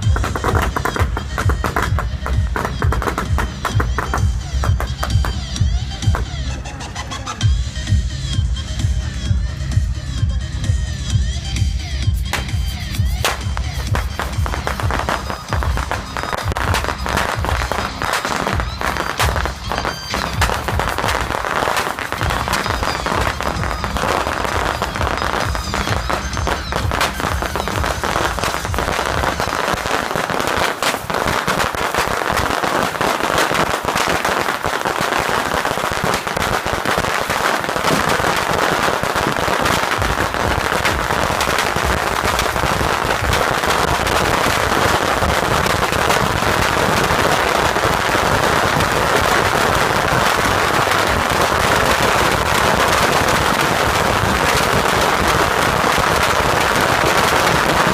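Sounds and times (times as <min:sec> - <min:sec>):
fireworks rockets cracking and popping: 0:00.0 - 0:57.9.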